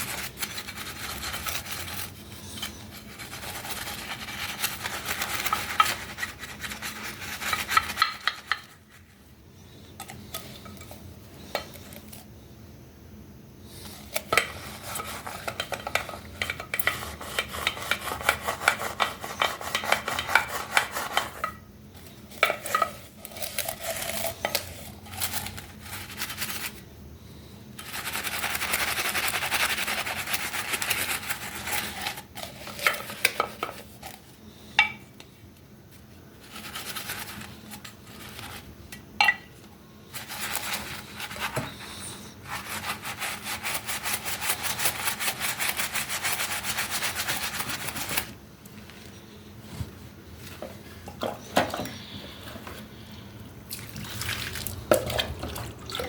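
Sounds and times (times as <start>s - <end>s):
steady rasp: 0.0s - 9.0s, 14.0s - 21.5s, 40.1s - 48.3s
tool scraping hard object: 14.1s - 21.6s.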